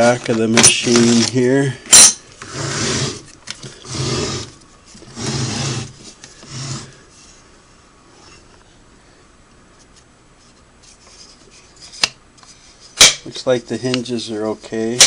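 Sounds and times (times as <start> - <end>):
sewing machine scraping on hard surface: 2.4 - 7.0.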